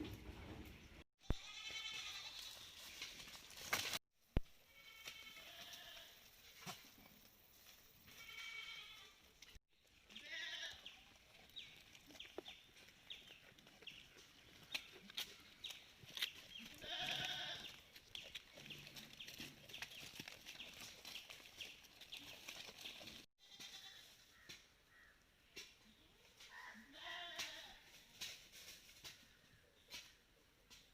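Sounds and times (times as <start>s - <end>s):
goats bleating: 1.2s - 2.7s, 8.1s - 9.2s, 10.1s - 10.9s, 16.6s - 17.8s, 23.4s - 24.1s.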